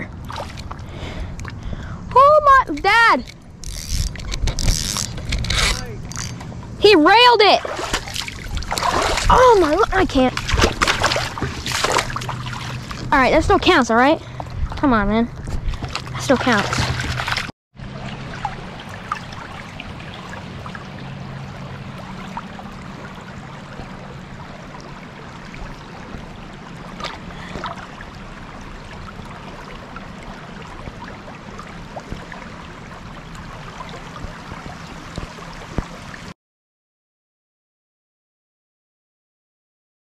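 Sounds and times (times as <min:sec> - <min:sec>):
low steady hum: 0:00.0 - 0:36.3
small knocks and splashes: 0:00.2 - 0:01.6, 0:07.6 - 0:13.1, 0:14.3 - 0:36.3
river water rushing: 0:07.6 - 0:13.0, 0:16.2 - 0:36.3.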